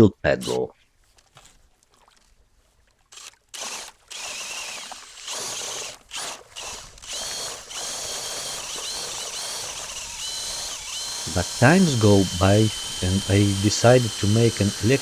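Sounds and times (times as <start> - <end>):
cordless drill whining: 0.4 - 0.6, 3.1 - 15.0.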